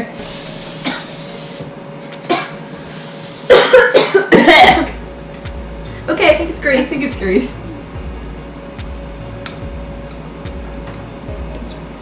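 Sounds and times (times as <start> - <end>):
aerosol spray hissing: 0.2 - 3.5
person coughing: 0.8 - 1.2, 2.2 - 2.6, 3.5 - 5.0.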